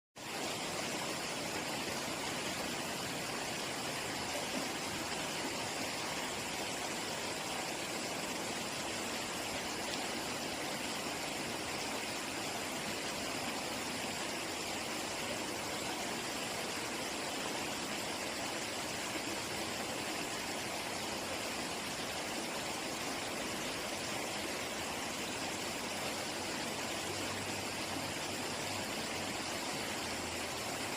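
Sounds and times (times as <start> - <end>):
running water rushing: 0.2 - 30.9.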